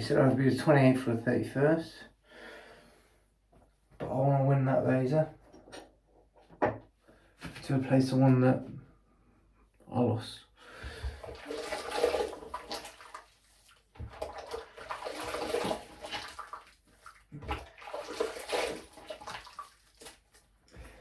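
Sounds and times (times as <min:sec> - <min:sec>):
running water splashing: 0:11.0 - 0:20.5.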